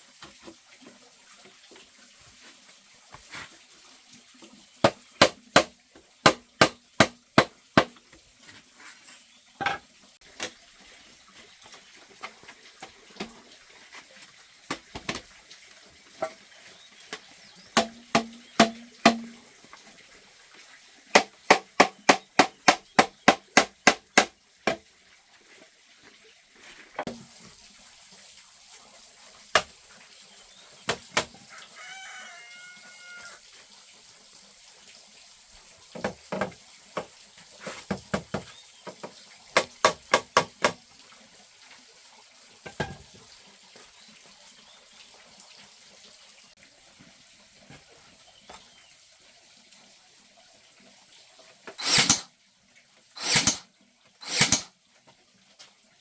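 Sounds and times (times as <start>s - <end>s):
tool knocking on bamboo: 4.8s - 8.0s, 17.8s - 19.4s, 21.2s - 24.8s, 30.9s - 31.4s, 36.0s - 37.1s, 37.8s - 40.8s, 42.6s - 43.2s.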